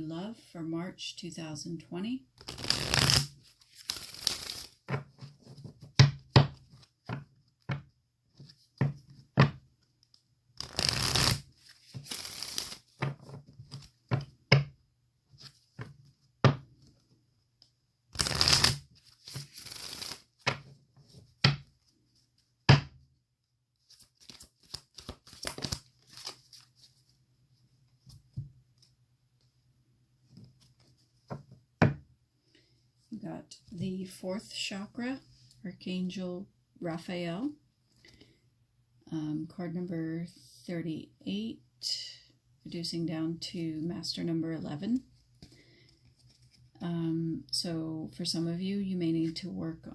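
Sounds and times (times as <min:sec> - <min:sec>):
cards being shuffled: 0:02.4 - 0:14.6, 0:18.1 - 0:22.5, 0:23.8 - 0:27.0.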